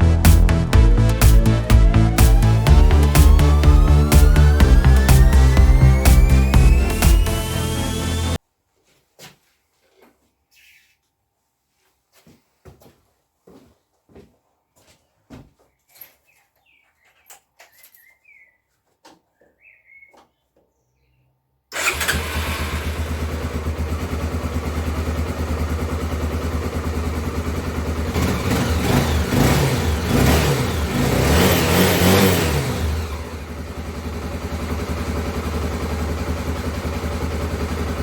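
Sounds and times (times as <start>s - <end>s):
motorcycle engine running: 0.0s - 8.4s, 21.8s - 38.0s.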